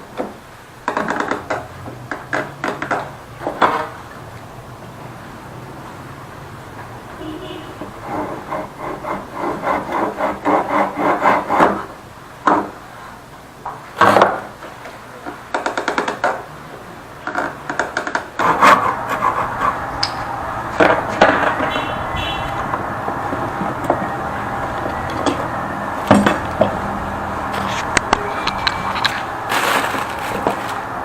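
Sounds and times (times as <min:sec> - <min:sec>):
tool rasping wood: 0:07.8 - 0:11.9, 0:18.4 - 0:19.9.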